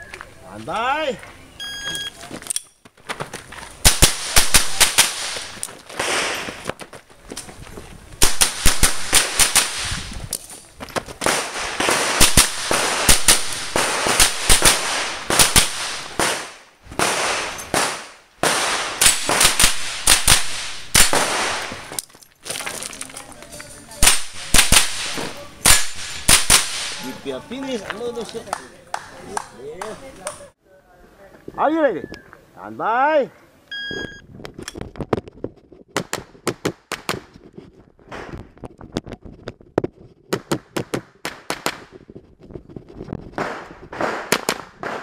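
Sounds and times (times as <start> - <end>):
rifle shots: 3.8 - 6.6, 8.2 - 10.1, 11.2 - 21.9, 24.0 - 27.2.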